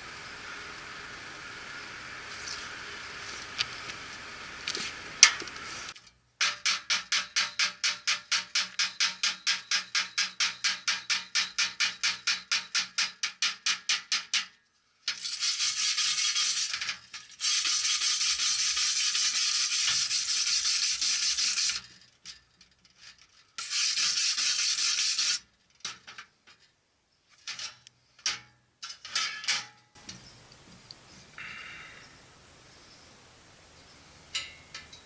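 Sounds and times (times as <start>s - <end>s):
welder arc crackling and hissing: 0.0s - 6.6s, 15.1s - 21.8s, 23.6s - 25.4s.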